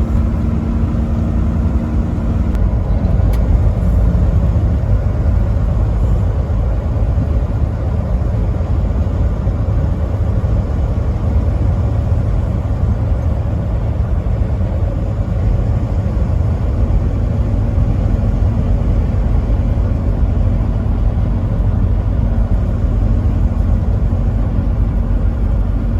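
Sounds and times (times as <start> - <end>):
truck road and engine rumble: 0.0 - 25.9.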